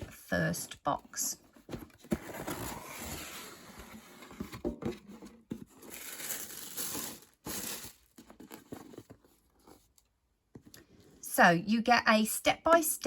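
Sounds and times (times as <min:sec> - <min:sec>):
packaging crinkling and tearing: 0:05.8 - 0:09.0.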